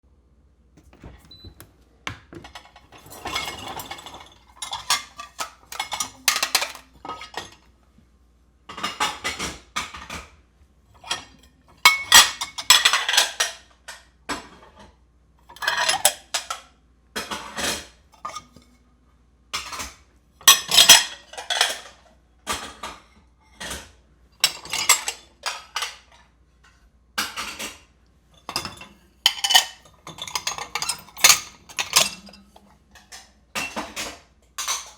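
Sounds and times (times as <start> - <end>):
dishes and cutlery clattering: 0.8 - 7.7, 15.6 - 16.6, 17.2 - 18.7, 19.6 - 23.0, 24.4 - 26.2, 27.2 - 34.9.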